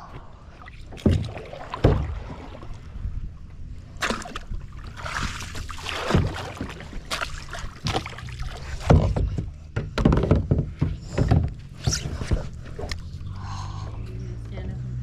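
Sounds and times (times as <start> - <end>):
paddle sloshing through water: 0.0 - 9.3.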